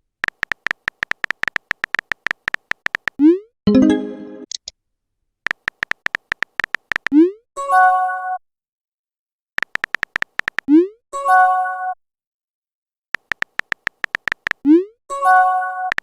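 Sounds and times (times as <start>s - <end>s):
keyboard typing clicks: 0.2s - 4.7s, 5.5s - 7.2s, 9.6s - 10.7s, 13.2s - 14.7s.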